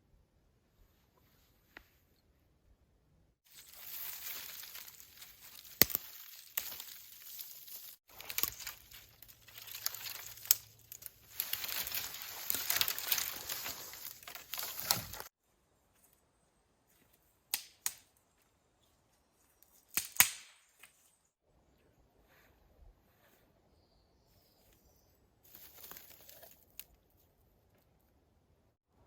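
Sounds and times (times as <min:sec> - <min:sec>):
rustling and crackling: 0:03.5 - 0:15.3
sharp snaps: 0:19.9 - 0:20.6.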